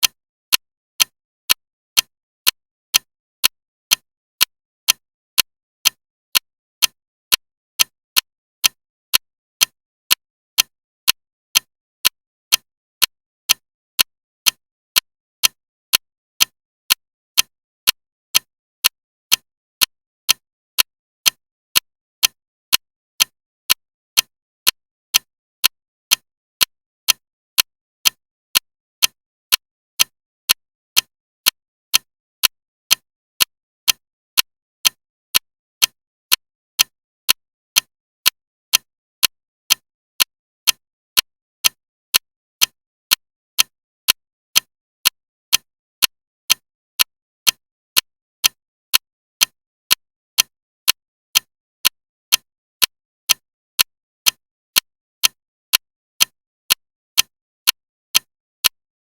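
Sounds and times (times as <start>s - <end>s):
clock ticking loudly: 4.9s - 8.8s.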